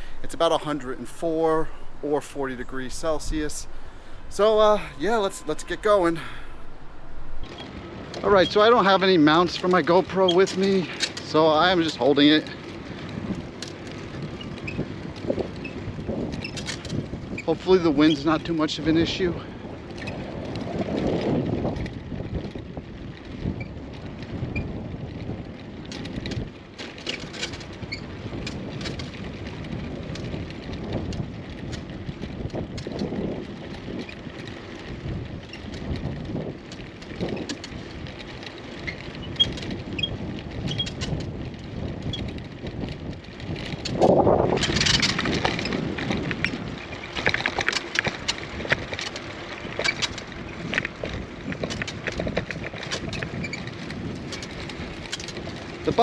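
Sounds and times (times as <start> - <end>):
bicycle rattling over paving: 0.0 - 7.5, 19.6 - 56.0
wind on microphone: 0.0 - 7.8, 27.6 - 56.0.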